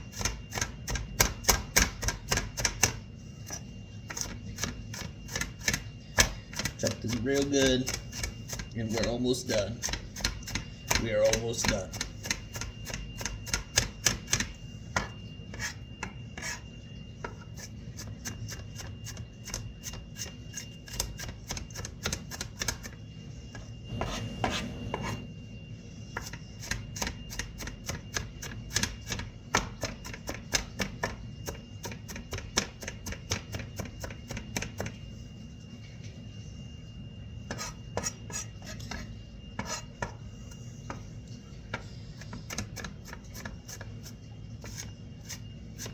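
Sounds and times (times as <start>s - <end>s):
knife chopping on cutting board: 23.9s - 25.2s.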